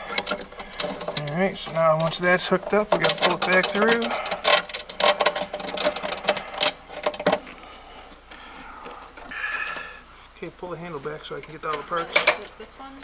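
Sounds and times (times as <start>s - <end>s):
metal mower parts clicking and rattling: 0.0s - 7.6s, 11.2s - 12.6s.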